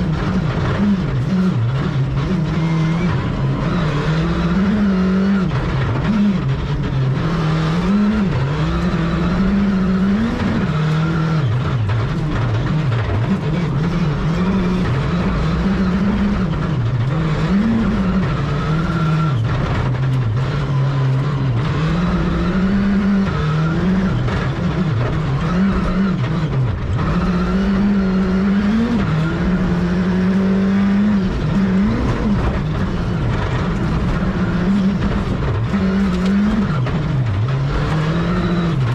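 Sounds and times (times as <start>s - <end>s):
rally car engine revving: 0.0s - 38.9s
road and tyre noise: 0.0s - 38.9s.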